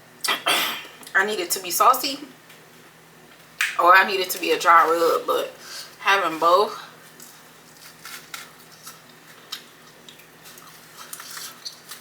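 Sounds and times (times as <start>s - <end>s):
person chewing: 7.0s - 12.0s.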